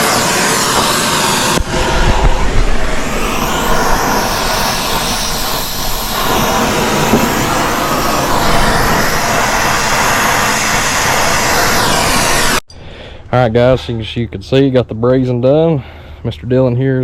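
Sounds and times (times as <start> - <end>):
torch hissing: 0.0 - 12.6.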